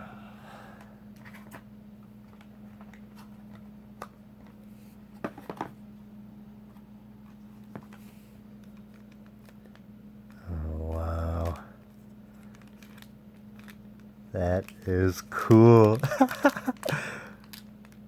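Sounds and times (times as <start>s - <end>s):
low electrical hum: 0.0s - 18.0s
trading cards being handled: 6.7s - 18.0s.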